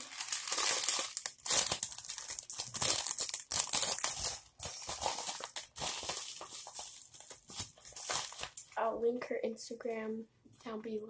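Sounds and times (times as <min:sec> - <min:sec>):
plastic packaging crinkling: 0:00.0 - 0:08.8.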